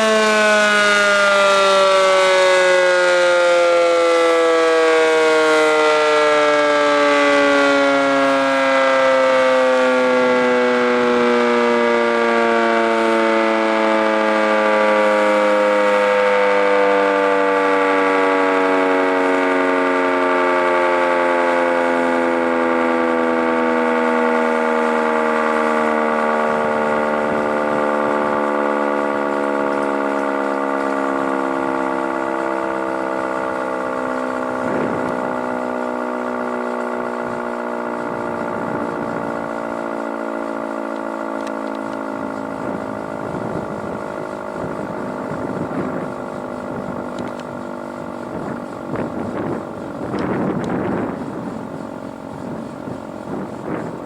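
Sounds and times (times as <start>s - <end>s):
warning siren winding down: 0.0s - 54.0s.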